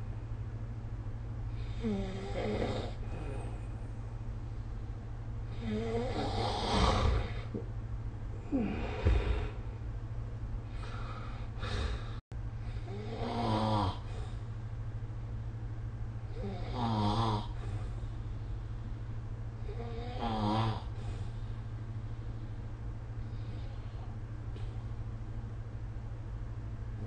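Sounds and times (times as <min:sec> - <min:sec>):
steady low hum: 0:00.0 - 0:27.0
person snoring: 0:01.6 - 0:03.7, 0:05.5 - 0:07.6, 0:12.8 - 0:14.4, 0:16.3 - 0:17.8, 0:19.6 - 0:21.1.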